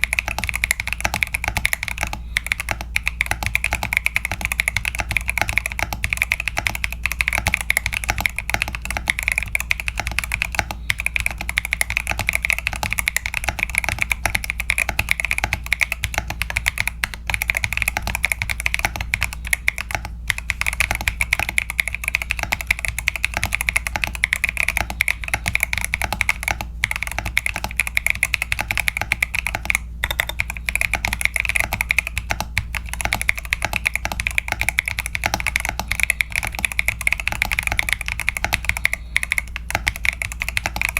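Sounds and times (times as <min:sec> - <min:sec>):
mechanical keyboard typing: 0:00.0 - 0:40.9.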